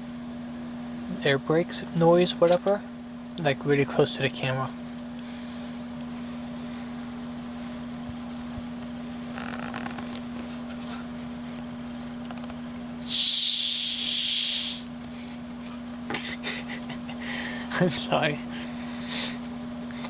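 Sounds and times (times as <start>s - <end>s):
steady low hum: 0.0s - 20.0s
soda gas hissing out: 13.0s - 14.9s.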